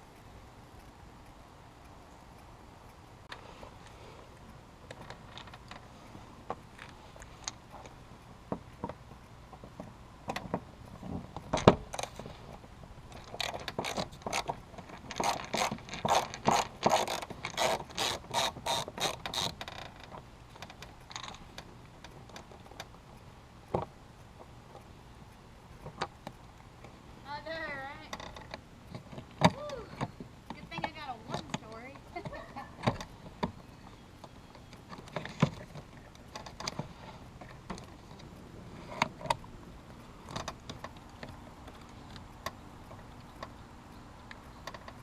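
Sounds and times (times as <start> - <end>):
ratchet wrench clicking: 13.1 - 20.2.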